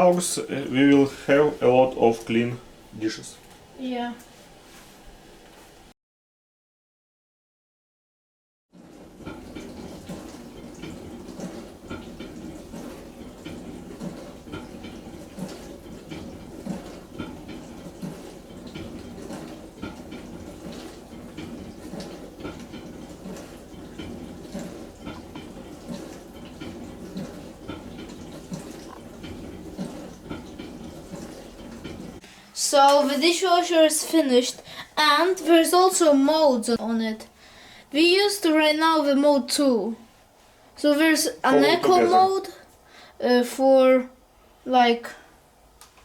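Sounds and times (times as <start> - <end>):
dishwasher water spraying: 0.0 - 5.9, 8.8 - 37.1, 40.8 - 42.5.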